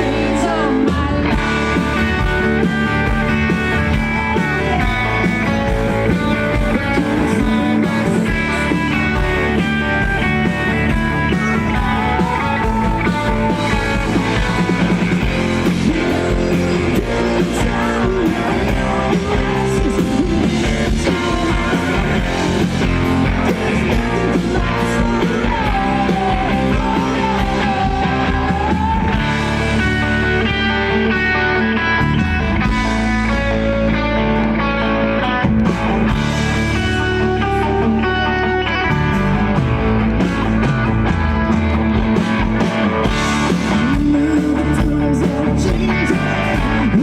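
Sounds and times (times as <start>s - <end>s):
guitar: 0.0s - 47.0s
rock band playing live: 0.0s - 47.0s.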